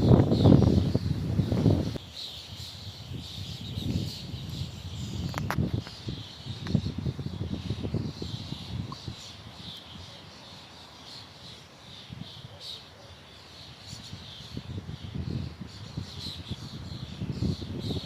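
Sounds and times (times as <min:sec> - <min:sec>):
gusty wind rumble: 0:00.0 - 0:02.0, 0:02.9 - 0:09.4, 0:14.2 - 0:18.0
birds chirping: 0:00.0 - 0:18.0.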